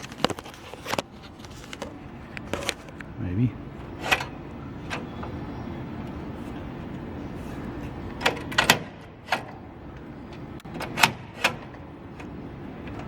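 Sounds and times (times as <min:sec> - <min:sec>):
low background hum: 0:00.0 - 0:13.0
metal door latch clicks and clinks: 0:03.9 - 0:05.4, 0:08.1 - 0:13.0.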